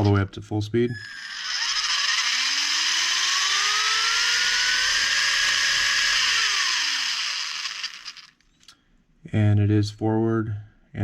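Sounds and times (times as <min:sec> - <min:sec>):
electric motor whining: 0:00.9 - 0:08.4.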